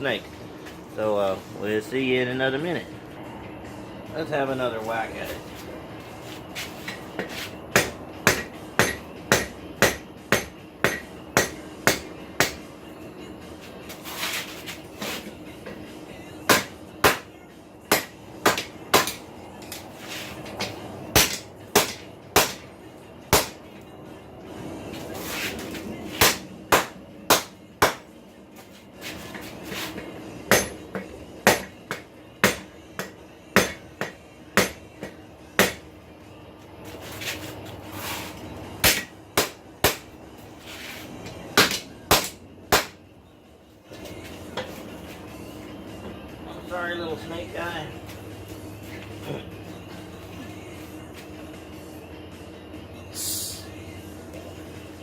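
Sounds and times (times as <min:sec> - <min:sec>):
hammer striking steel on anvil: 0:06.9 - 0:12.7, 0:16.5 - 0:17.3, 0:17.9 - 0:19.8, 0:20.6 - 0:22.7, 0:23.3 - 0:23.6, 0:26.2 - 0:28.1, 0:30.5 - 0:35.8, 0:38.8 - 0:40.1, 0:41.6 - 0:43.0.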